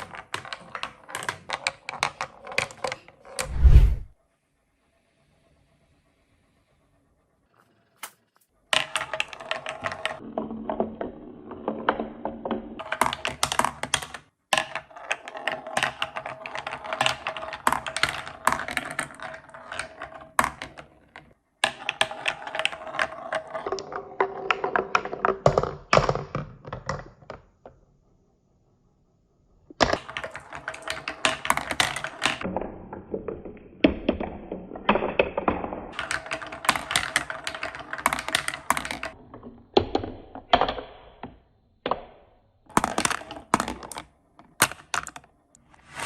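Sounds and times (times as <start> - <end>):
marbles clattering down wooden track: 0.0 - 3.4, 8.7 - 27.4, 29.8 - 40.7, 42.7 - 46.0.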